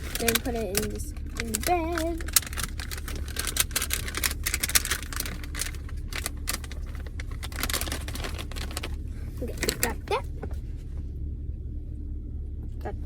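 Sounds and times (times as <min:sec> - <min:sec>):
plastic bag crinkling: 0:00.0 - 0:10.1.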